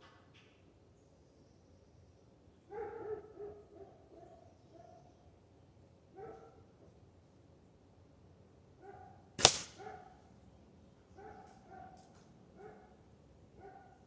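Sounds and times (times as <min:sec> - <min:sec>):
dog barking: 0:02.7 - 0:05.1, 0:06.2 - 0:06.6, 0:08.8 - 0:10.2, 0:11.2 - 0:12.0, 0:12.6 - 0:12.9, 0:13.6 - 0:14.0
air rifle shot: 0:09.4 - 0:09.9.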